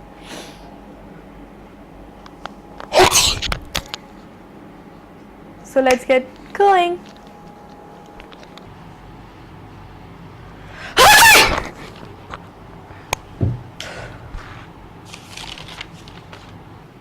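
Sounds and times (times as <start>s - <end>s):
woman sneezing: 2.9s - 3.5s, 11.0s - 11.8s.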